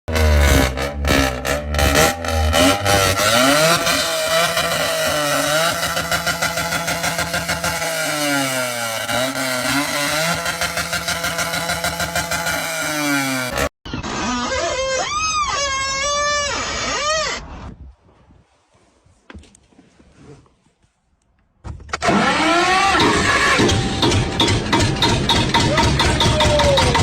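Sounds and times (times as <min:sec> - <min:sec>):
engine revving with fast pulsing: 0:00.0 - 0:13.7, 0:22.0 - 0:27.0.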